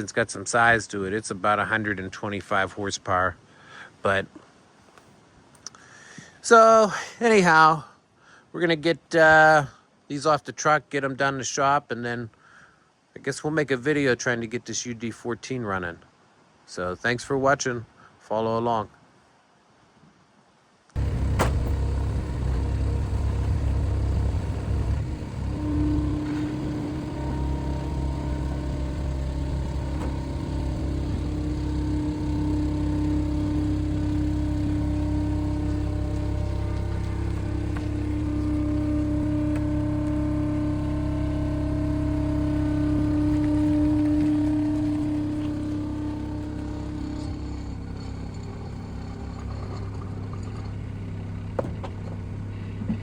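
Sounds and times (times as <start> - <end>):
large engine rumbling: 21.0 - 53.0
steady whine: 21.0 - 53.0.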